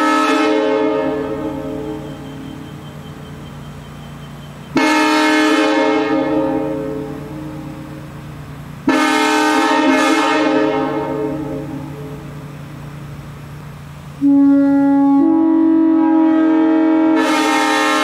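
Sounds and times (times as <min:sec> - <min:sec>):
locomotive horn blasts: 0:00.0 - 0:08.2, 0:08.8 - 0:12.5, 0:14.2 - 0:18.0.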